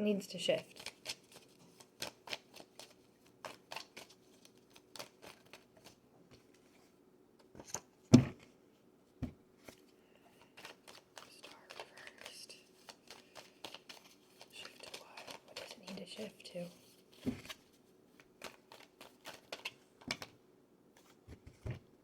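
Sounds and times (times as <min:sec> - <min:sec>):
cards shuffling: 0:00.7 - 0:06.7, 0:09.7 - 0:20.3.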